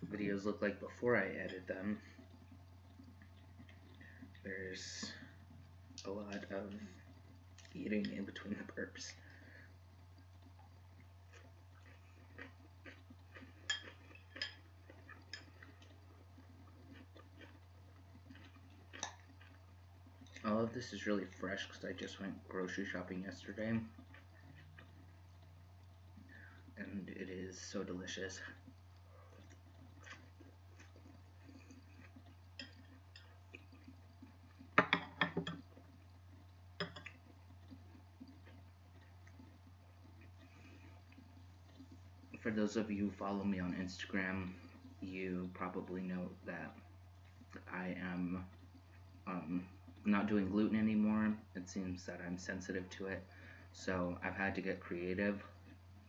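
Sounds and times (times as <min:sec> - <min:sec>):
steady low hum: 0:00.0 - 0:56.0
tableware clinking: 0:34.8 - 0:35.6, 0:36.8 - 0:37.2.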